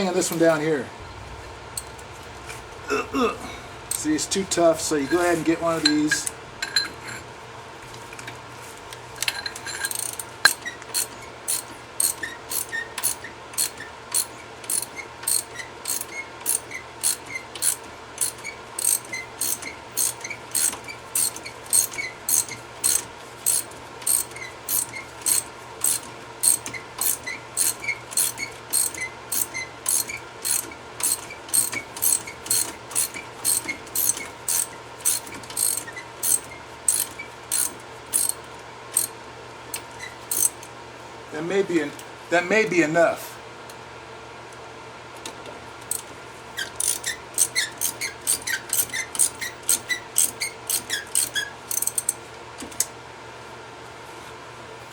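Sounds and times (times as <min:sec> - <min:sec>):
ratchet wrench clicking: 0:09.2 - 0:39.1, 0:39.7 - 0:40.7, 0:46.7 - 0:52.2.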